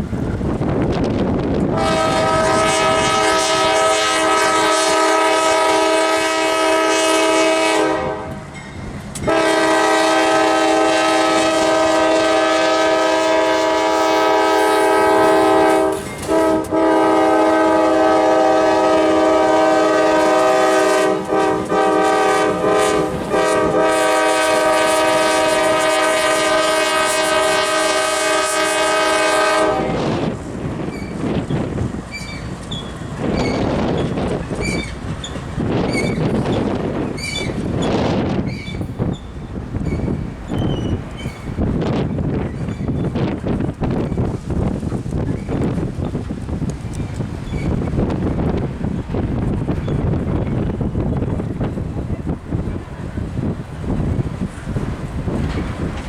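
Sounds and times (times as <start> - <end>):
locomotive air horn chord: 1.7 - 8.5, 9.3 - 30.4.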